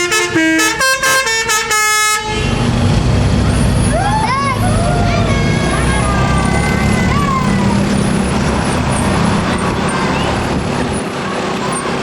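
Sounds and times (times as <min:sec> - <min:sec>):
multi-tone bus horn: 0:00.0 - 0:02.9, 0:05.0 - 0:08.2
road noise: 0:00.0 - 0:12.0
diesel engine running: 0:02.2 - 0:12.0.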